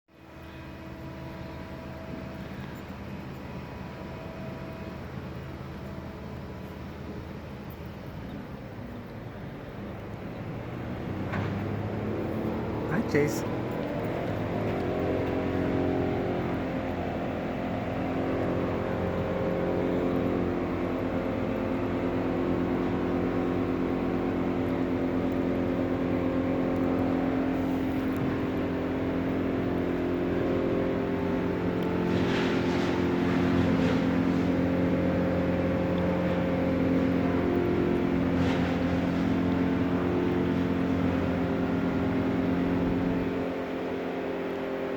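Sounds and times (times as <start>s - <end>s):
crane engine running: 0.1s - 44.9s.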